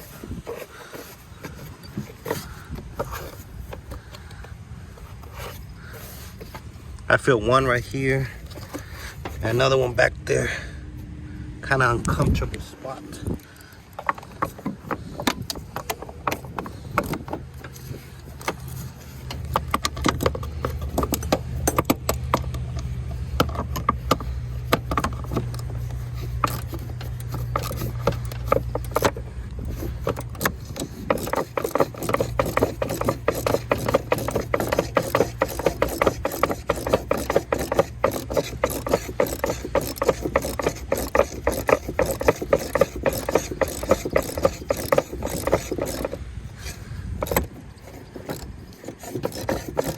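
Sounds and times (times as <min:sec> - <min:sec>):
steady low hum: 0:00.0 - 0:49.9
ratchet wrench clicking: 0:15.3 - 0:49.9.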